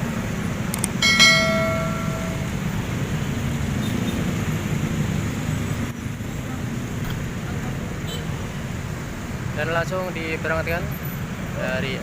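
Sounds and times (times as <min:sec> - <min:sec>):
ringing tone: 0:01.0 - 0:02.8.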